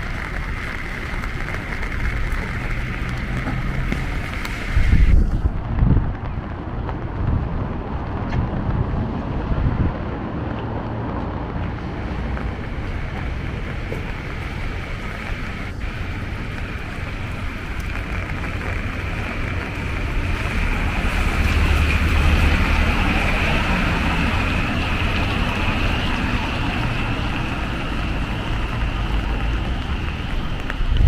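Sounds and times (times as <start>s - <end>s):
rain hiss: 0.0s - 6.6s, 11.6s - 31.0s
low traffic rumble: 0.0s - 31.0s
tyres on wet pavement: 0.0s - 31.0s
vehicle passing: 7.1s - 31.0s.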